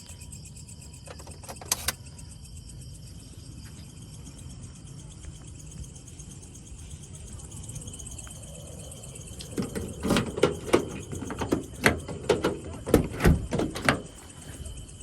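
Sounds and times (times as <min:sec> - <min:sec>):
insects chirping: 0:00.0 - 0:15.0
steady low rumble: 0:02.5 - 0:15.0
objects knocking and clattering: 0:09.6 - 0:14.2.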